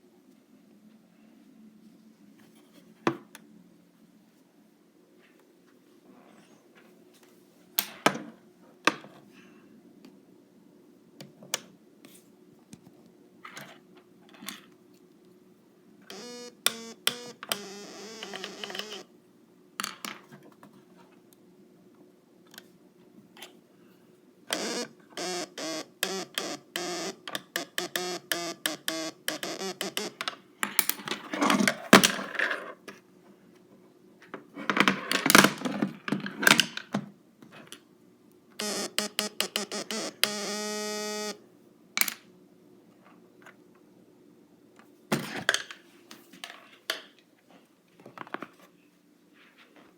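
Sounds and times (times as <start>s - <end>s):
stylus clicks and crackles: 16.1s - 19.1s, 24.5s - 30.4s.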